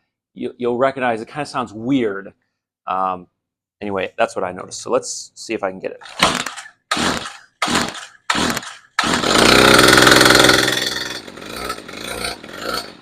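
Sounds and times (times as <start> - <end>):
starter cord pulls: 6.0 - 11.9
muffled trimmer engine revving: 6.1 - 13.0.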